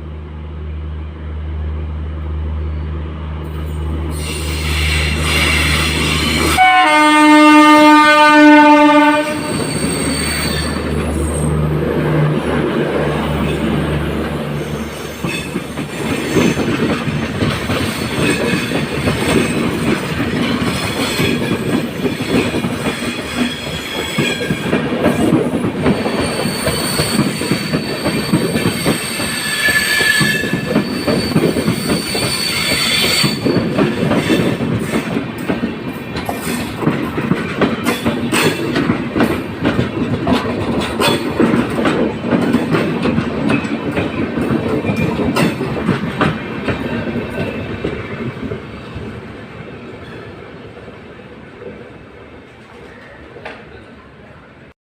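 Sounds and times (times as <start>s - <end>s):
train wheels rumbling: 0.0s - 54.0s
high wheel squeal: 3.6s - 6.7s, 9.4s - 11.6s, 14.5s - 16.6s, 26.0s - 34.5s
clickety-clack over rail joints: 7.4s - 49.1s, 52.5s - 53.9s.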